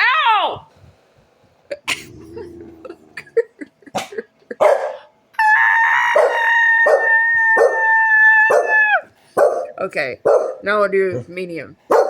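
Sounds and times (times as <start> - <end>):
dog barking: 4.6 - 5.1, 6.2 - 7.8, 8.5 - 8.8, 9.4 - 10.6.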